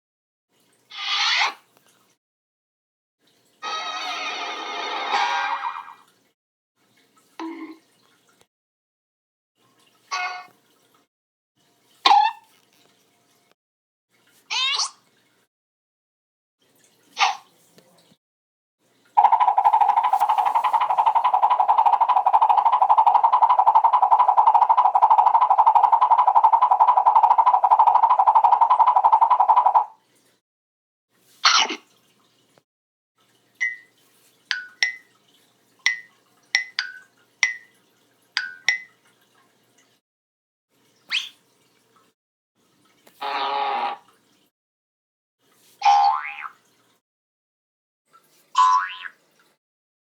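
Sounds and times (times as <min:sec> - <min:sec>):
rapidly pulsing cartoon tone: 0:19.2 - 0:29.9.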